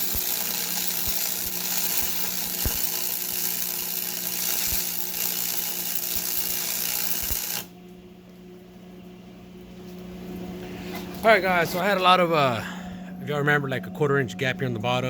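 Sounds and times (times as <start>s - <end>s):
crackling hissing welding arc: 0.0s - 7.7s
low hum: 7.7s - 15.0s.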